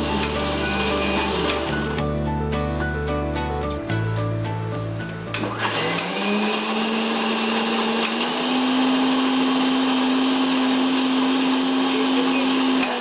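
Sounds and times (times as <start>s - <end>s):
mixer grinder motor whine: 0.0s - 2.1s, 5.3s - 13.0s.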